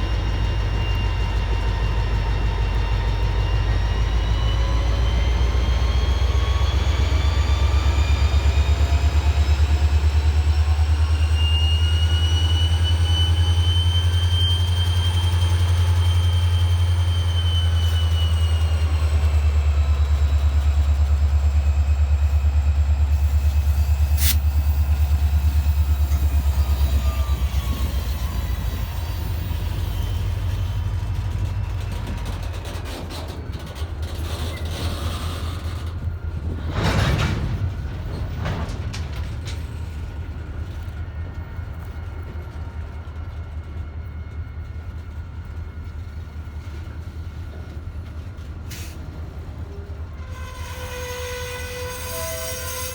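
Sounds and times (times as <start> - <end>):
diesel locomotive rumbling past: 0.0 - 52.9
faint high squealing tones: 11.2 - 19.2, 50.2 - 52.9.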